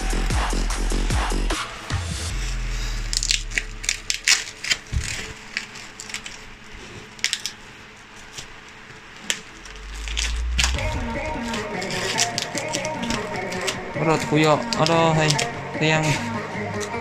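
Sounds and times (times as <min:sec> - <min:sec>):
cardboard and plastic crinkling: 0:03.0 - 0:16.1.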